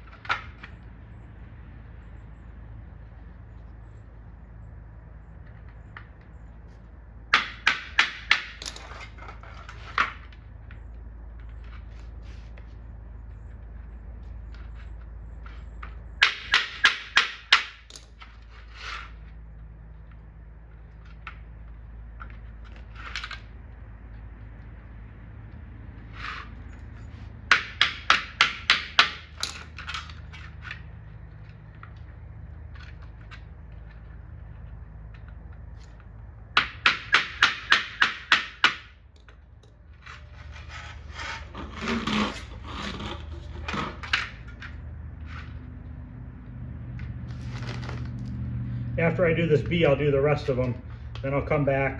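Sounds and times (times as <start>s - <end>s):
rubbing and handling noise: 8.6s - 16.2s.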